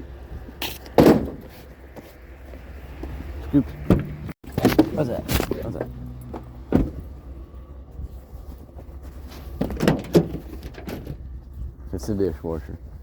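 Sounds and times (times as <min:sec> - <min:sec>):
sharp knocks and clunks: 0:00.8 - 0:01.5, 0:03.8 - 0:07.1, 0:09.5 - 0:11.3
vehicle idling hum: 0:05.0 - 0:12.7.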